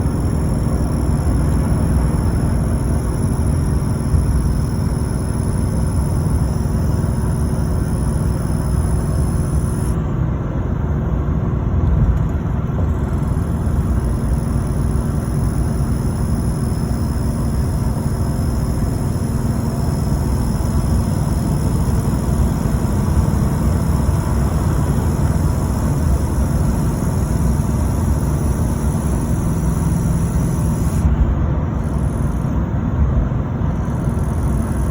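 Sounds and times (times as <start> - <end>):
diesel engine rumbling: 0.0 - 34.9
high-pitched turbocharger whine: 0.0 - 34.9.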